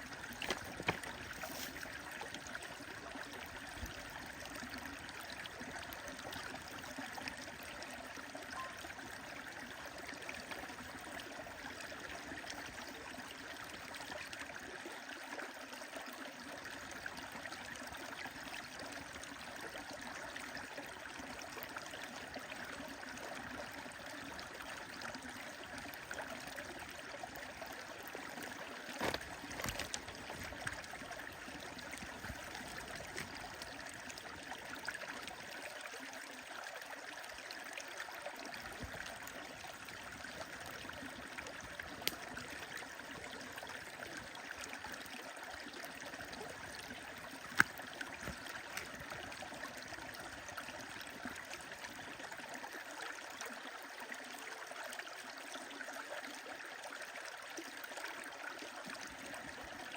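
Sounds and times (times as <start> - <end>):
stream running: 0.0 - 59.9
wood fire crackling: 29.0 - 30.5, 42.0 - 42.3.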